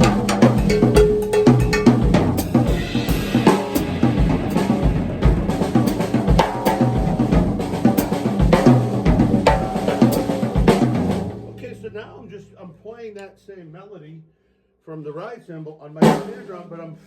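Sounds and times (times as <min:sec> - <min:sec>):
snare drum melody: 0:00.0 - 0:12.1
bass drum hits: 0:00.0 - 0:12.6.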